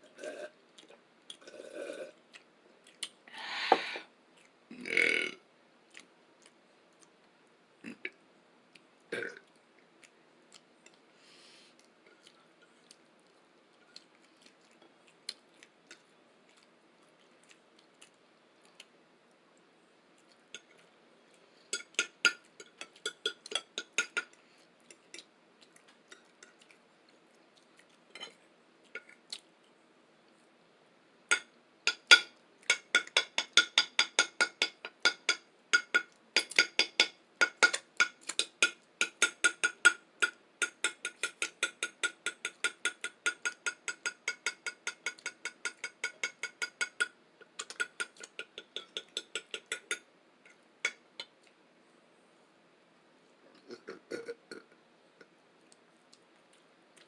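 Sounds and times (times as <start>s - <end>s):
tapping on a ceramic plate: 31.3s - 50.0s.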